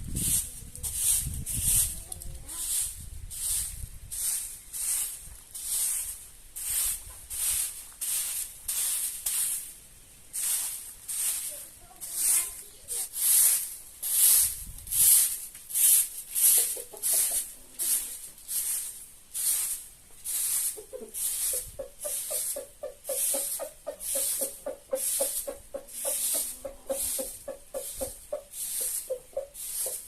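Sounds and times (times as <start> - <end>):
broom sweeping: 0.0 - 30.0
chicken clucking: 16.4 - 18.2, 20.1 - 30.0.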